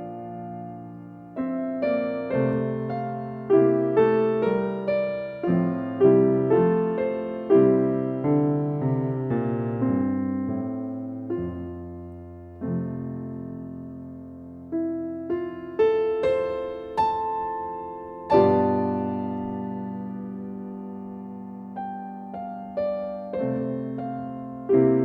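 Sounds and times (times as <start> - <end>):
slow gentle piano music: 0.0 - 25.0.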